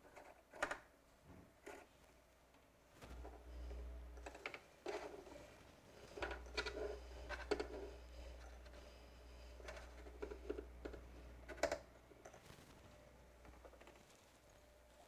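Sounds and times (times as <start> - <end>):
sewing machine motor hum: 3.0 - 14.9.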